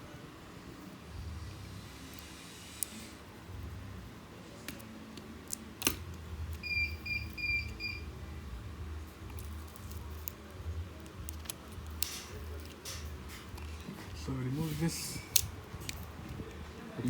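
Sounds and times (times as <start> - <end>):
phone parts clicking: 9.2 - 13.8.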